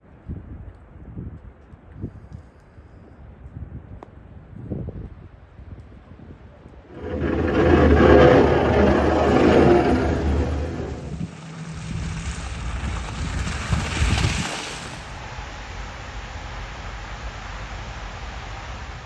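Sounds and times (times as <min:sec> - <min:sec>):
wind noise on microphone: 0:07.0 - 0:15.0
vehicle passing with hiss: 0:10.3 - 0:15.1.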